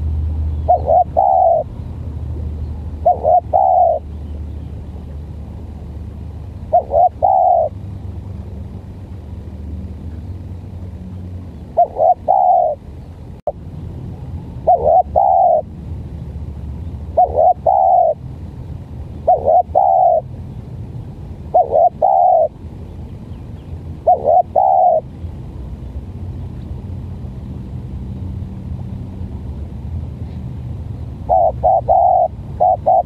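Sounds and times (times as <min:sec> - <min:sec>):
dove cooing: 0:00.6 - 0:01.8, 0:02.7 - 0:04.3, 0:06.6 - 0:07.8, 0:11.7 - 0:12.8, 0:14.6 - 0:15.7, 0:17.1 - 0:18.2, 0:19.2 - 0:20.3, 0:21.5 - 0:22.6, 0:24.0 - 0:25.1, 0:31.2 - 0:33.0.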